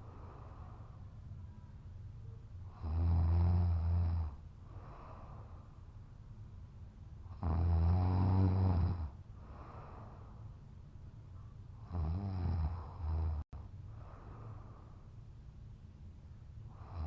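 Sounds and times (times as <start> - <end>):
quiet breaths out: 0.0 - 1.9, 4.6 - 6.0, 9.1 - 10.7, 12.7 - 15.2
man snoring: 2.7 - 4.4, 7.3 - 9.2, 11.9 - 13.4, 16.8 - 17.0.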